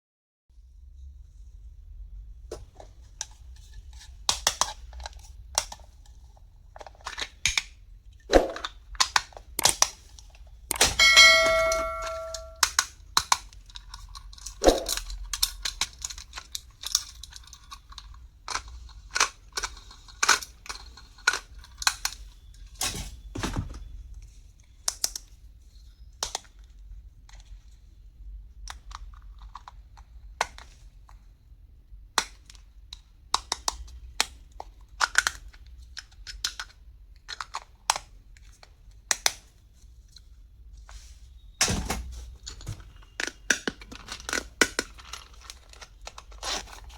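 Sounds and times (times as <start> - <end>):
plastic parts clicking and tapping: 4.0 - 22.3, 28.6 - 31.2, 32.2 - 39.5, 42.4 - 46.9.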